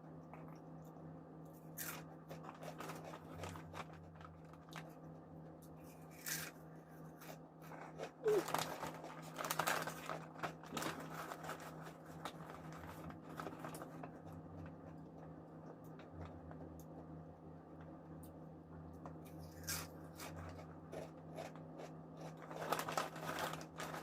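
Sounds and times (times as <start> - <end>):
crunchy chips being chewed: 1.7 - 5.0, 5.9 - 15.0, 19.2 - 24.0.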